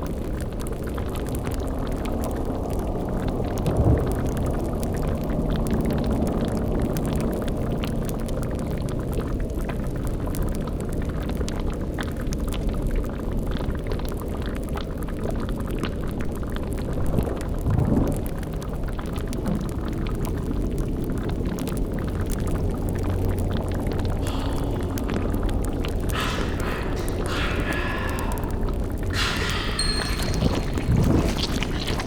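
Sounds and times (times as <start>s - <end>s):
bubbling and crackling: 0.0s - 32.0s
low rumble: 23.5s - 32.0s.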